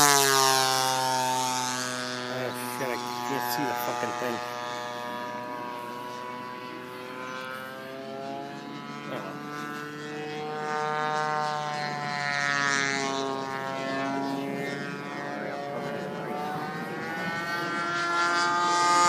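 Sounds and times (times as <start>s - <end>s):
model plane engine in flight: 0.0s - 19.0s.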